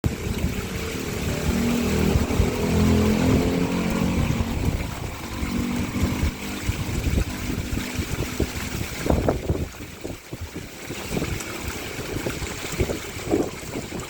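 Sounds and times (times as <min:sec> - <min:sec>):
waterfall splashing into pond: 0:00.0 - 0:14.0.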